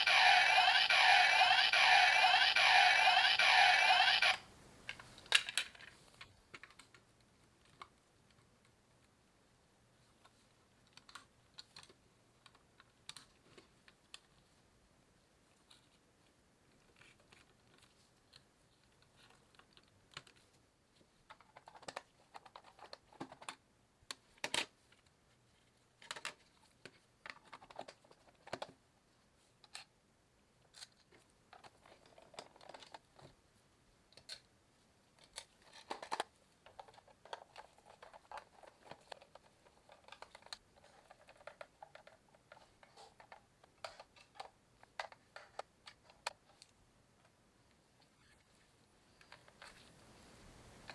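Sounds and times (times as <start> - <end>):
small plastic parts rattling: 30.7 - 33.3, 35.2 - 46.7.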